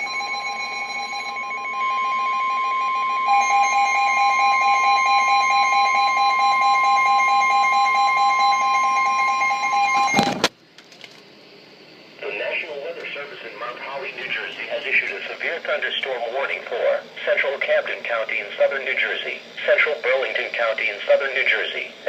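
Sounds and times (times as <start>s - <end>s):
steady warning tone: 0.0s - 10.4s, 11.5s - 22.0s.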